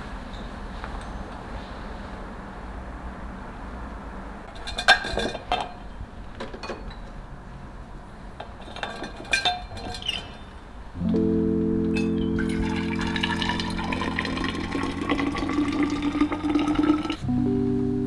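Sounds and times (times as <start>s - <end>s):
music: 11.0s - 18.0s
teacups clinking together: 12.6s - 17.2s.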